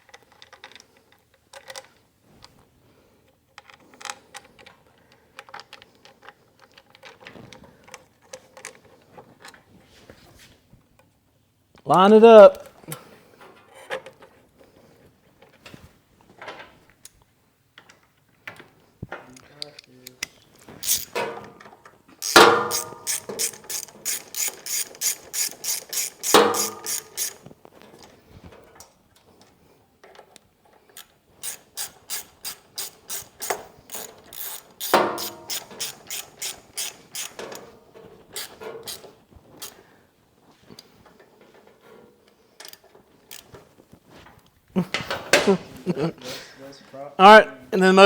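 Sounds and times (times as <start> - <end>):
ratchet wrench clicking: 20.8 - 21.2, 22.2 - 27.5, 31.0 - 37.7, 38.4 - 39.8, 42.7 - 43.5.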